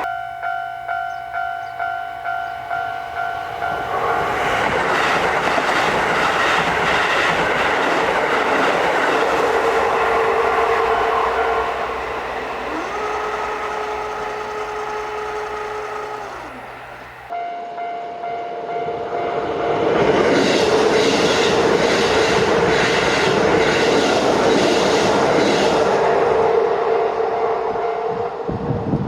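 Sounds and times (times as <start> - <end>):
level crossing warning bell: 0.0 - 4.8, 9.0 - 18.9
electric train whine: 0.0 - 29.0
train wheels clacking on rail joints: 3.2 - 17.3.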